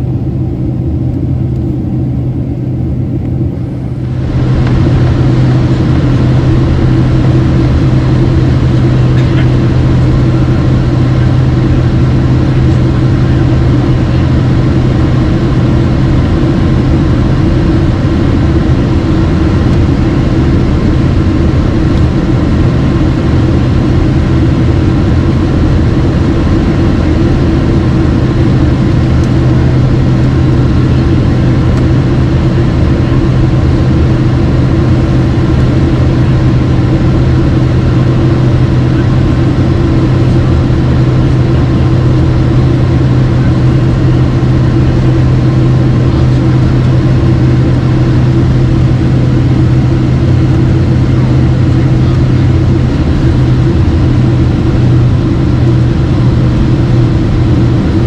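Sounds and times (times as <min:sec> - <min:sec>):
airplane cabin engine drone: 0:00.0 - 0:58.0.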